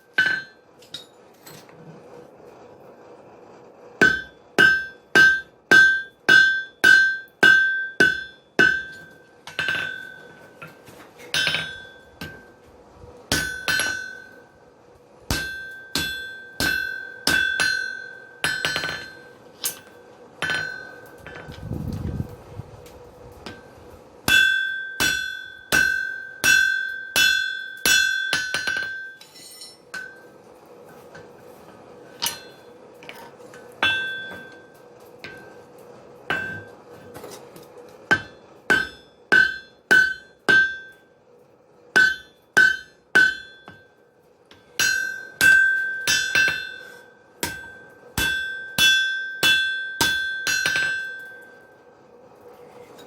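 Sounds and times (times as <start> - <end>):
hammer striking iron on anvil: 0.0 - 1.6, 4.0 - 12.6, 13.3 - 14.5, 15.3 - 21.6, 23.4 - 23.7, 24.3 - 30.3, 32.2 - 35.6, 36.3 - 37.4, 38.1 - 41.1, 41.9 - 51.7.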